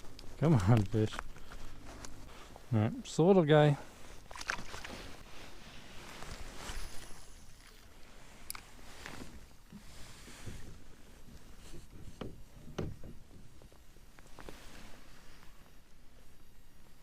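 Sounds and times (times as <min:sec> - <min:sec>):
steady outdoor hiss: 0:00.0 - 0:17.0
water splashes: 0:04.2 - 0:05.3.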